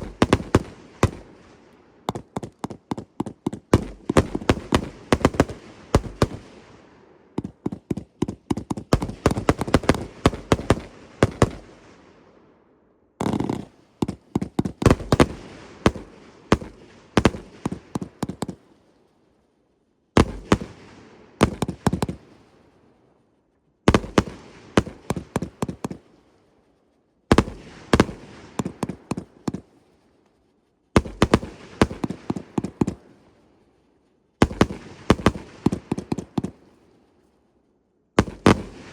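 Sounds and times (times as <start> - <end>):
fireworks rapid loud bangs: 0.0 - 12.3, 13.2 - 18.7, 20.2 - 22.5, 23.9 - 26.2, 27.3 - 29.8, 31.0 - 33.2, 34.4 - 36.8, 38.2 - 38.9.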